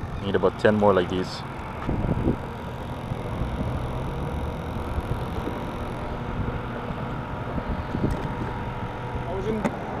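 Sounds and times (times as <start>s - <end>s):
constant low rumble: 0.0s - 10.0s
wind on microphone: 1.8s - 2.6s, 6.2s - 9.0s.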